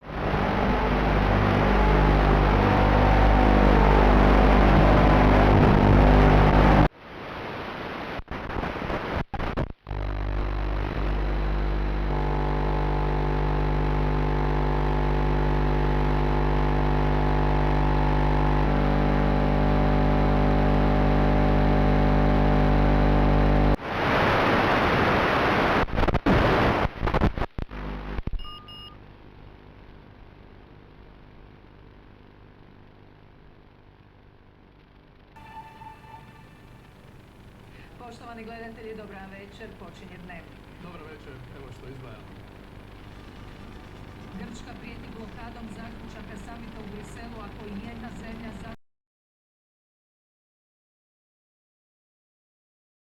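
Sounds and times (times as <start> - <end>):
steady electrical buzz: 0.0 - 23.8, 34.7 - 48.8
loud static hiss: 0.0 - 28.4, 35.0 - 48.8.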